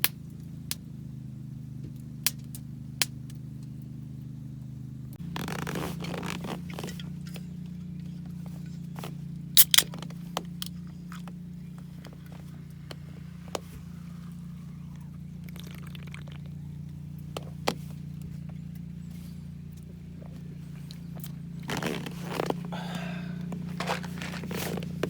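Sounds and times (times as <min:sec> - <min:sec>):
steady low hum: 0:00.0 - 0:25.0
rustling and handling noise: 0:17.2 - 0:25.0.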